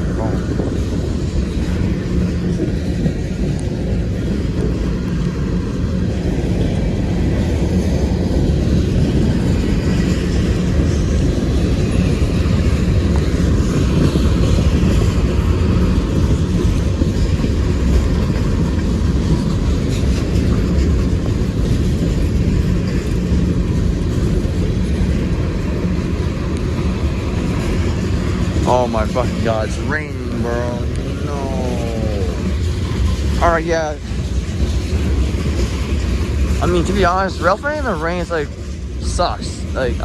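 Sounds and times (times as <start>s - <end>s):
freight train rumbling on track: 0.0s - 40.0s
heavy rain hissing: 28.4s - 34.0s.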